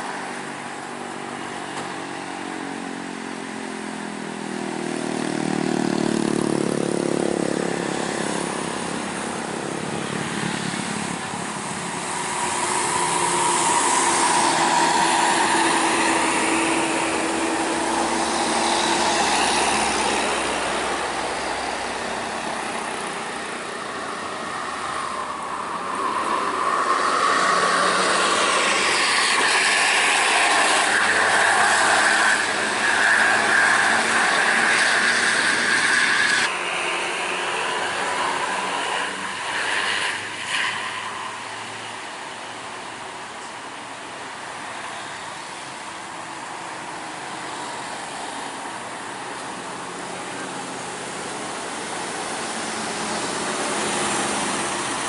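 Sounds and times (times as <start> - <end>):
bus engine and road noise: 0.0 - 55.0.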